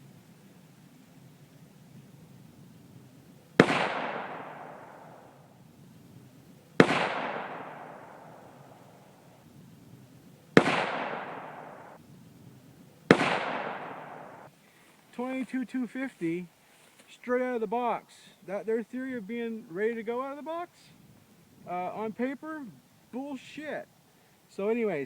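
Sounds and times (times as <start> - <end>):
rifle shots with echo: 3.6 - 5.5, 6.8 - 9.3, 10.5 - 12.0, 13.1 - 14.5.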